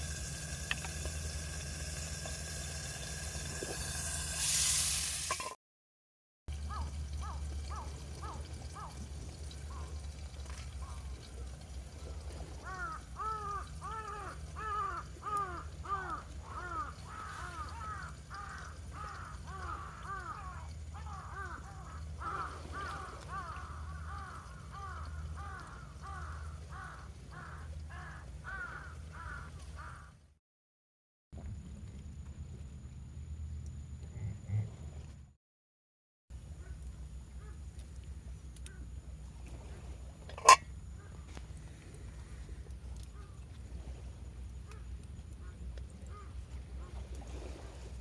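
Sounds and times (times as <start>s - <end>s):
steady low rumble: 31.4s - 35.3s.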